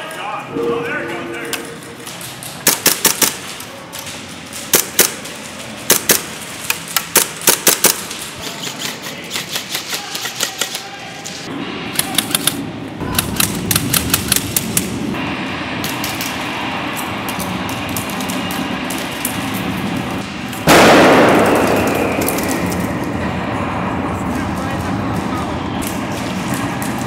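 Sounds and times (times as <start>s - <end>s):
airsoft rifles firing bursts: 2.6s - 3.5s, 4.7s - 8.2s.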